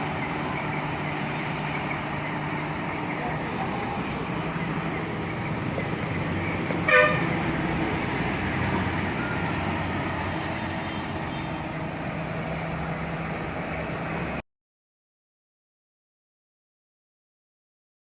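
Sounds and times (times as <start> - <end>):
heavy vehicle engine running: 0.0 - 14.4
short horn toot: 6.8 - 7.3.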